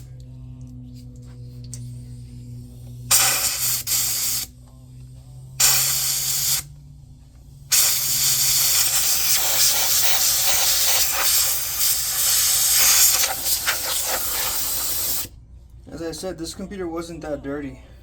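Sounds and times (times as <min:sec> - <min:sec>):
compressed air blowing: 0:03.0 - 0:04.5, 0:05.6 - 0:06.7, 0:07.7 - 0:15.3.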